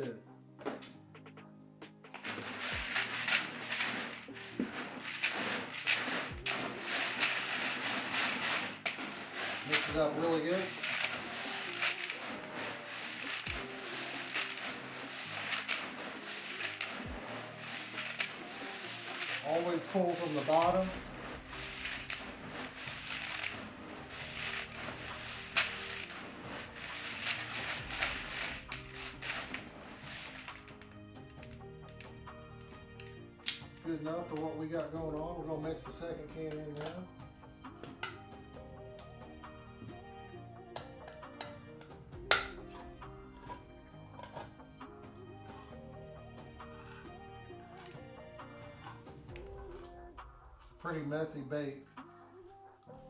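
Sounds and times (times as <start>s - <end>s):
hands mixing bait in bucket: 2.1s - 37.1s.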